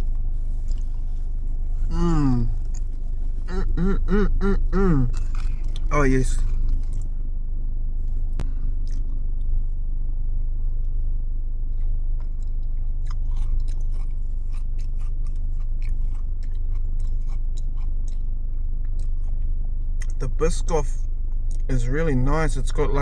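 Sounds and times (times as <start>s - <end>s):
chewing and wet mouth smacks: 0.0s - 1.9s, 5.1s - 7.2s, 8.1s - 9.6s, 10.4s - 20.2s, 21.3s - 21.7s
steady low hum: 0.0s - 23.0s.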